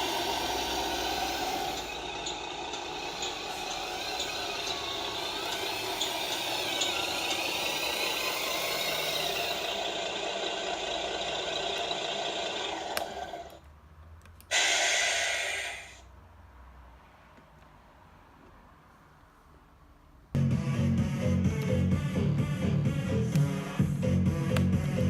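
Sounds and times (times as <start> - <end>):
toy truck engine sound hum and rattle: 0.0 - 13.6
short loud hiss: 14.5 - 16.0.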